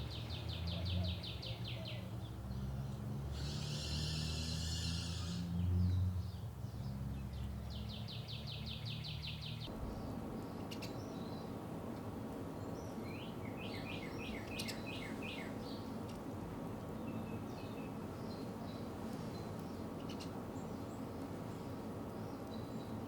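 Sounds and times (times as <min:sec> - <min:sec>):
songbirds singing: 0:00.0 - 0:23.0
steady low background noise: 0:07.8 - 0:23.0.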